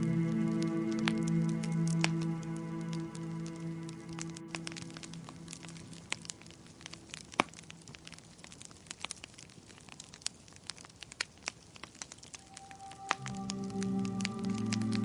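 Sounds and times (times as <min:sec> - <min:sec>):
soft music: 0:00.0 - 0:07.2, 0:12.3 - 0:15.0
wood fire crackling: 0:00.0 - 0:15.0.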